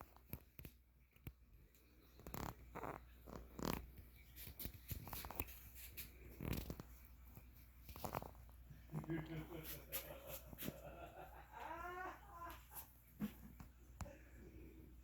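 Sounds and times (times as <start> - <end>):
faint handling rustles and knocks: 0.0 - 11.1.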